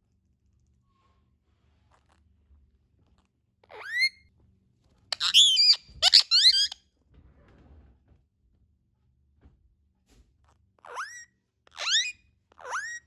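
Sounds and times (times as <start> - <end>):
parakeet calling: 3.7 - 4.2, 5.1 - 6.8, 10.8 - 13.0.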